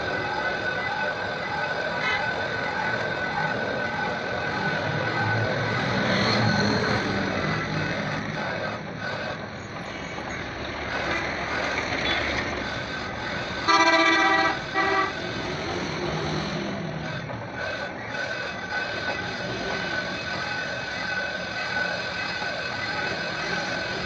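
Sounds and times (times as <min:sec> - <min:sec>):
traffic noise: 0:00.0 - 0:24.0
vehicle horn honking: 0:13.6 - 0:15.2.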